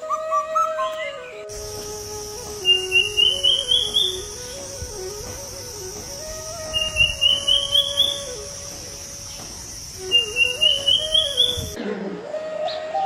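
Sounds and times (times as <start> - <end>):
insect drone: 1.4 - 11.8
bird rising trilled call: 1.5 - 11.8.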